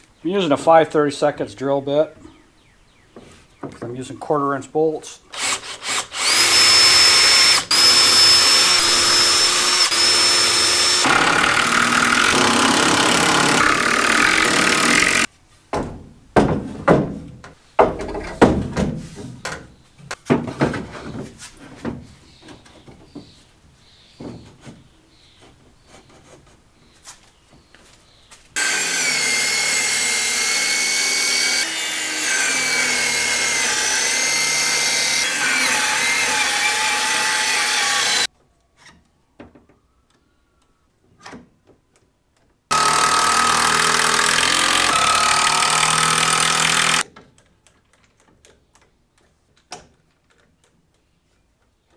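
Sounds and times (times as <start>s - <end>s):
power drill motor whining: 5.3s - 15.3s, 28.6s - 38.3s, 42.7s - 47.0s.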